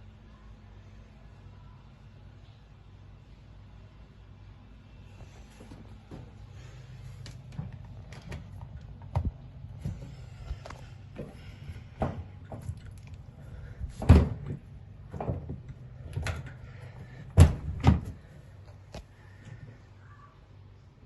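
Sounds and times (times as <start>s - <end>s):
dryer humming: 5.1s - 19.8s
knocks and thumps on dryer: 13.9s - 16.4s, 17.0s - 18.3s.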